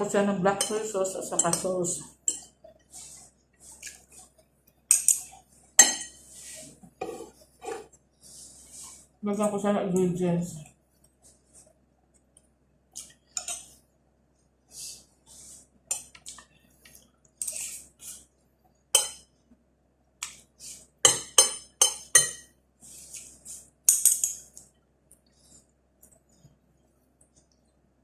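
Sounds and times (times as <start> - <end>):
utensils clinking on a plate: 4.9 - 6.2, 13.4 - 13.7, 21.1 - 22.5.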